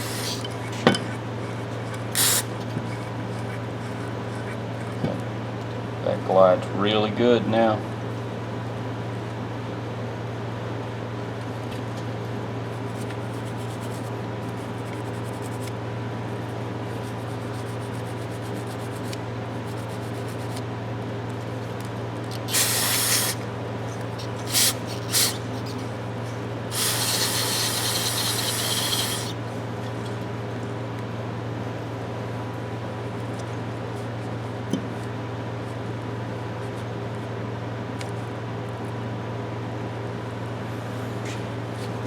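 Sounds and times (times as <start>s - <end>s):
aerosol spray can hissing: 0.0s - 0.4s, 2.2s - 2.5s, 22.4s - 23.4s, 24.2s - 25.9s, 26.7s - 29.4s
low background hum: 0.0s - 42.0s.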